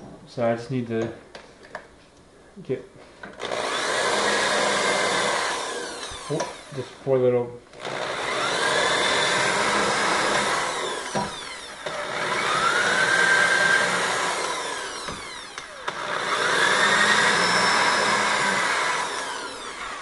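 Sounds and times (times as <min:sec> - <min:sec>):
electric drill boring into wood: 0:03.4 - 0:07.0, 0:07.7 - 0:20.0.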